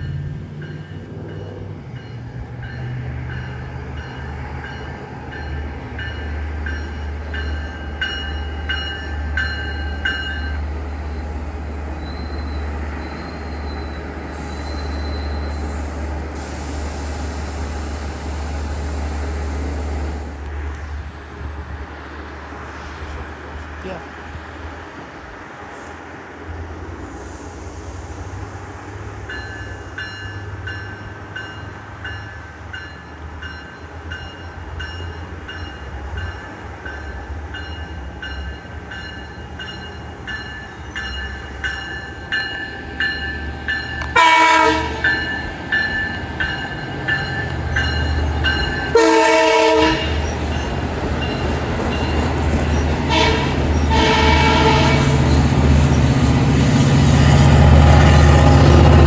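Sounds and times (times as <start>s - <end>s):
crossing bell ringing: 0.0s - 16.5s, 29.3s - 55.5s
diesel train rumble: 0.0s - 59.0s
train horn blasts: 44.0s - 45.2s, 48.8s - 50.3s, 53.1s - 55.4s.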